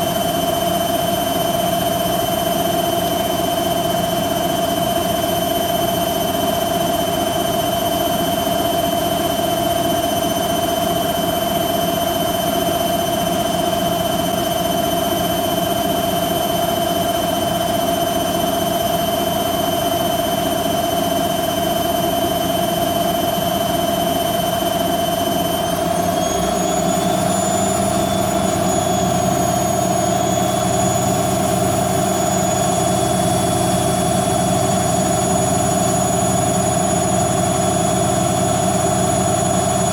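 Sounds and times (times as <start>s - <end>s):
washing machine spinning: 0.0s - 39.9s
high motor whine: 21.6s - 39.9s.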